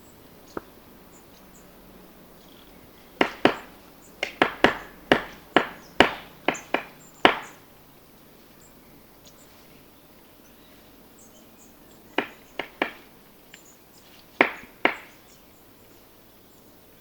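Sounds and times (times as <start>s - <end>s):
woodpecker knocking on cone: 3.2s - 7.6s, 12.2s - 13.1s, 14.4s - 15.2s.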